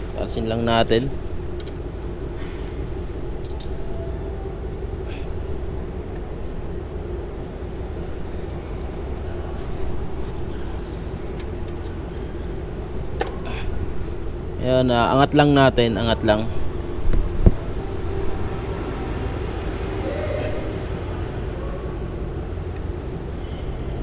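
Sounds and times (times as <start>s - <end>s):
low mechanical hum: 0.0s - 24.0s
hand tools clicking on metal: 3.4s - 3.9s.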